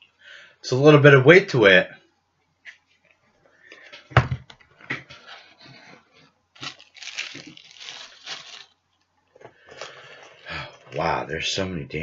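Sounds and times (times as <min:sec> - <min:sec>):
packaging rustling and crinkling: 0:06.5 - 0:11.0
packaging tearing: 0:06.6 - 0:08.8.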